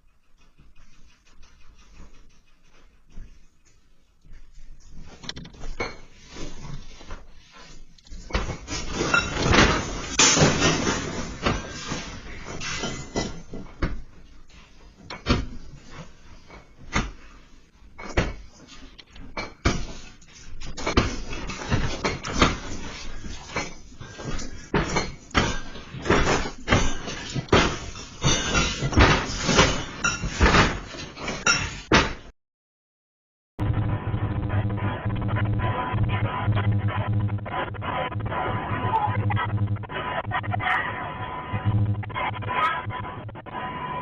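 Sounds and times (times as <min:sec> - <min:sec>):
doors and fittings rattling: 0:00.0 - 0:03.1, 0:19.2 - 0:32.2.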